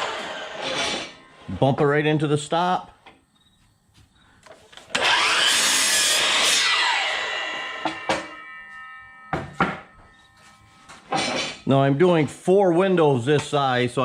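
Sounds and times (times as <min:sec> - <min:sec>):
miter saw cutting wood: 0:00.0 - 0:01.3, 0:04.8 - 0:11.6.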